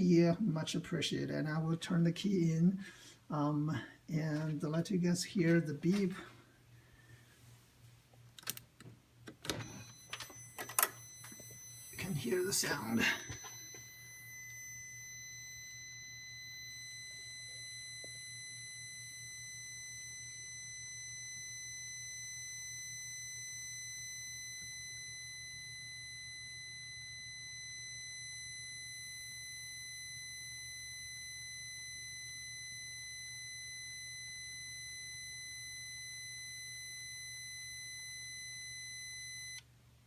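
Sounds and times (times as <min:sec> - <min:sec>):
low electrical buzz: 0:00.0 - 0:40.0
long high warning beep: 0:09.5 - 0:39.6.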